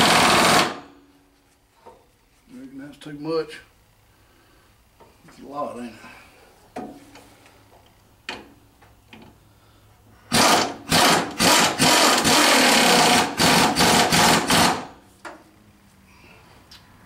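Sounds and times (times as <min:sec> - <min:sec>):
power tool running in bursts: 0:00.0 - 0:00.8, 0:10.3 - 0:14.9.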